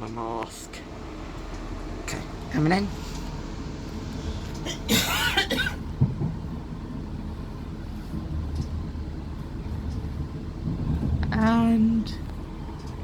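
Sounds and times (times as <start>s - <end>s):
train running low rumble: 0.0s - 13.0s
person coughing: 4.7s - 5.8s.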